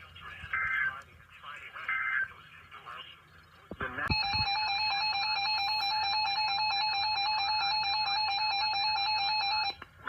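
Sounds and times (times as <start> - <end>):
two-tone electronic alert signal: 4.1 - 9.8.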